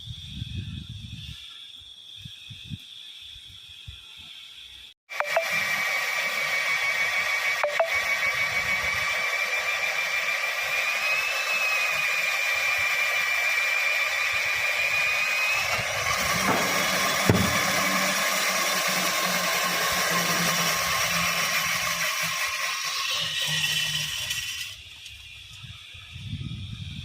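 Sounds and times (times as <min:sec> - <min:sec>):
power tool whining: 0:05.1 - 0:25.9
sharp knock: 0:16.4 - 0:18.0.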